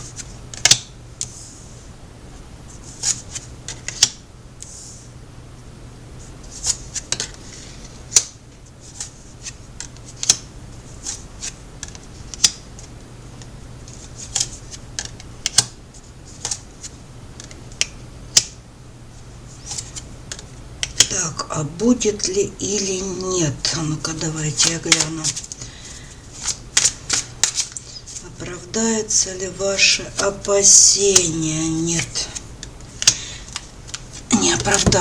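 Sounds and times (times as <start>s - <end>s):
faint low hum: 0.0s - 35.0s
cards shuffling and snapping: 26.4s - 28.2s.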